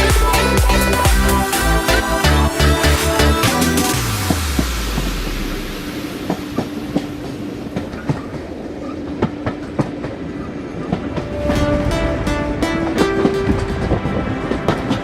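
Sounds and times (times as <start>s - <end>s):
train rumble: 4.0s - 15.0s
train wheels clicking over rail joints: 6.2s - 11.2s
pitched tone with overtones: 11.1s - 14.6s.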